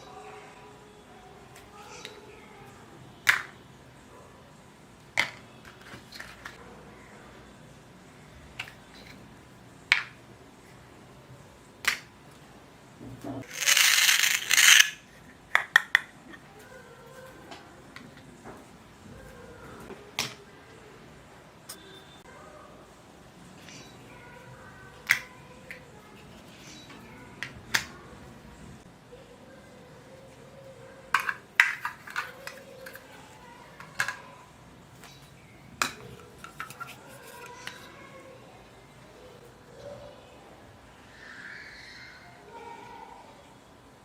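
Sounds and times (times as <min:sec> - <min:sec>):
plastic toy pieces clattering: 0:13.4 - 0:15.0, 0:31.1 - 0:33.2
plastic toy pieces clicking: 0:13.4 - 0:16.1.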